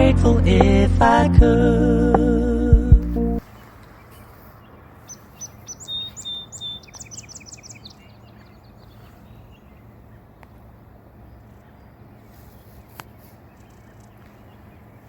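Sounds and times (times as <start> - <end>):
songbird chirping: 0.0 - 10.7.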